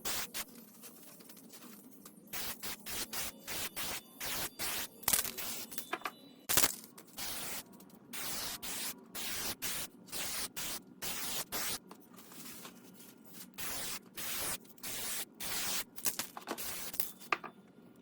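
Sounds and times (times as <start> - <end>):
spray paint hissing: 0.0 - 0.5, 2.3 - 5.8, 7.2 - 11.8, 13.6 - 16.0, 16.6 - 17.2.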